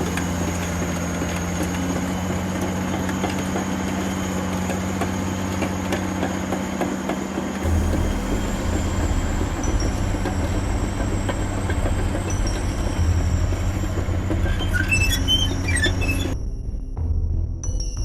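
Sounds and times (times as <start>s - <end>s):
heavy machinery rumbling and clanking: 0.0s - 16.4s
high metallic squeals: 7.6s - 16.4s.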